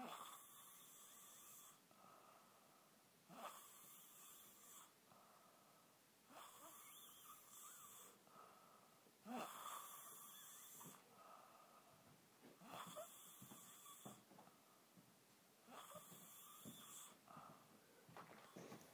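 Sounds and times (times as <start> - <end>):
slow faint breaths: 1.7 - 3.1, 5.0 - 6.0, 7.6 - 9.2, 10.3 - 15.1, 15.9 - 18.9.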